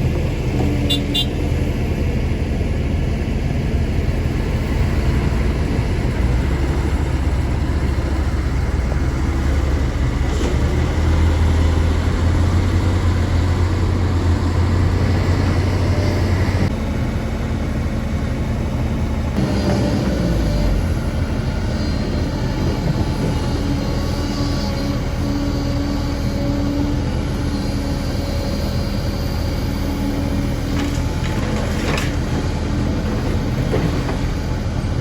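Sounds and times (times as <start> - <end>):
excavator diesel engine drone: 0.0 - 35.0.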